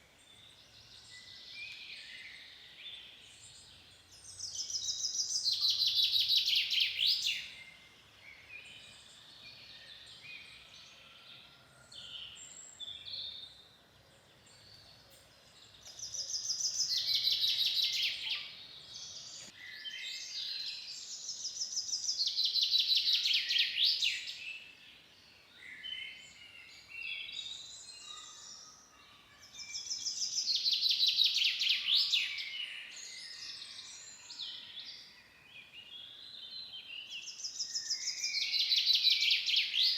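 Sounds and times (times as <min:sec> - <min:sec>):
faint bird chirps: 0:00.0 - 0:39.9
songbird singing rapid notes: 0:14.6 - 0:19.5.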